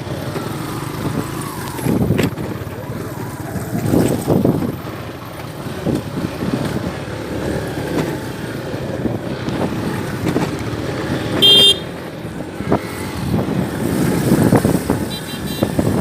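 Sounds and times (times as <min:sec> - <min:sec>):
road traffic passing: 0:00.0 - 0:16.0
car horn toot: 0:11.4 - 0:12.0, 0:15.1 - 0:15.9.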